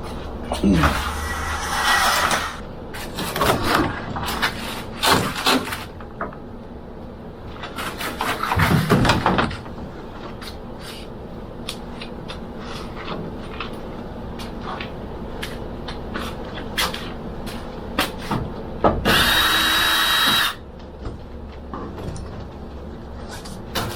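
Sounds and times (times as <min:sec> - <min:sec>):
building materials knocking and clattering: 0:07.8 - 0:09.7.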